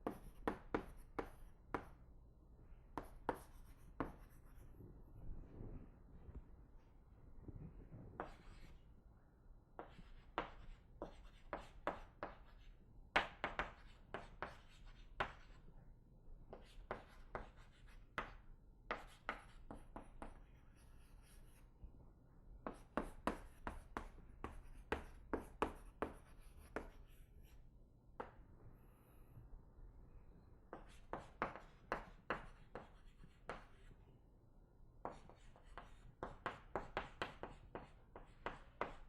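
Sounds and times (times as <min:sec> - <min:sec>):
pen writing on hard surface: 0:00.0 - 0:02.0, 0:03.0 - 0:04.6, 0:08.2 - 0:08.8, 0:09.8 - 0:15.6, 0:16.5 - 0:21.6, 0:22.7 - 0:27.6, 0:30.7 - 0:33.9, 0:35.0 - 0:39.0
faint low hum: 0:00.0 - 0:36.8.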